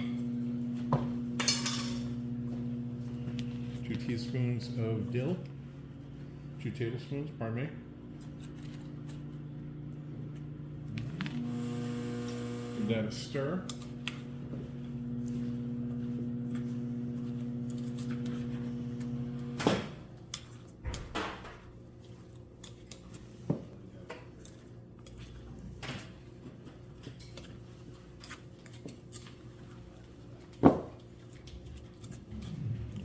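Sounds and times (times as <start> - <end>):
microwave oven humming: 0.0 - 21.8, 32.0 - 33.0
kitchen utensils clinking: 1.4 - 2.2.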